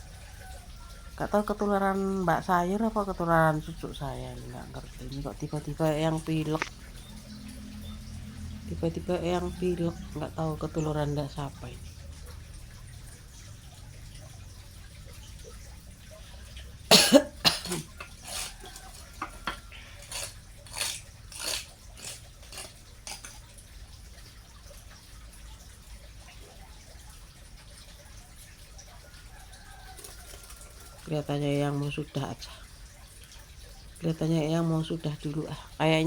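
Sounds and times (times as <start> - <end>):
person coughing: 16.9 - 17.9.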